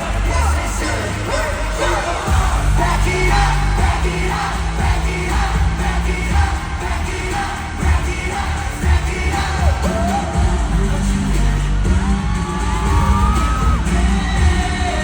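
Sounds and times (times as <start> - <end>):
pop song with singing over bass beat: 0.0 - 15.0.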